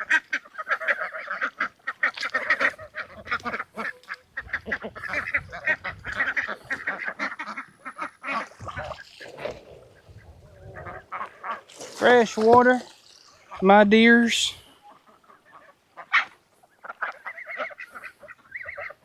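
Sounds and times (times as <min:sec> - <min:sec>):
ducks quacking: 0:00.0 - 0:19.0
geese: 0:00.0 - 0:19.0.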